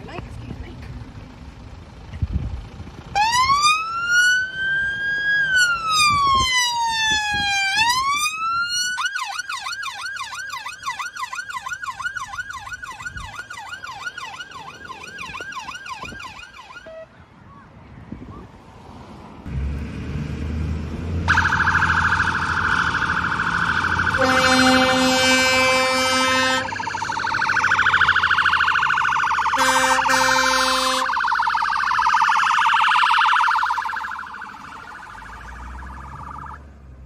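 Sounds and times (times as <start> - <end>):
emergency siren wail and yelp: 3.1 - 17.2, 21.2 - 36.8.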